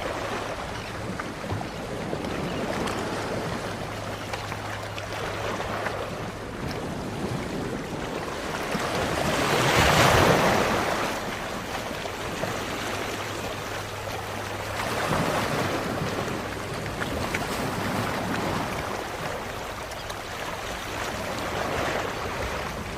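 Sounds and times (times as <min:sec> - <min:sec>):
sea waves washing in: 0:00.0 - 0:22.9.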